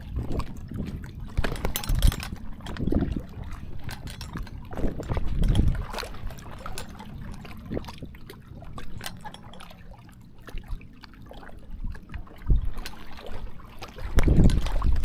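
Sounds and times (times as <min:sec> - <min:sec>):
water lapping at shoreline: 0:00.0 - 0:15.0
wind rumble on microphone: 0:00.0 - 0:15.0
clicks and knocks: 0:01.4 - 0:03.0.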